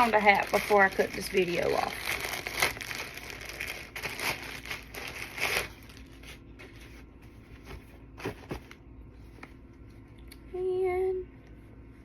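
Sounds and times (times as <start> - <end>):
packaging crinkling and rustling: 0.0 - 9.6.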